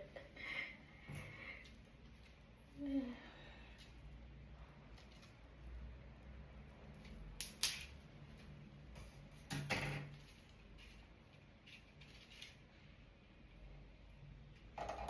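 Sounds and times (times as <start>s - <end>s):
small hard objects clicking: 7.0s - 8.0s.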